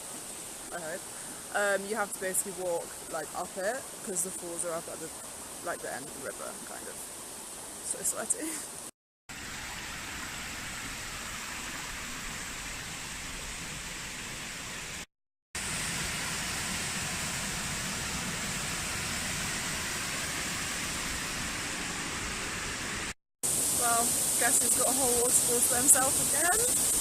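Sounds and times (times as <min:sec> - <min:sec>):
river and waterfall rushing: 0:00.0 - 0:27.0.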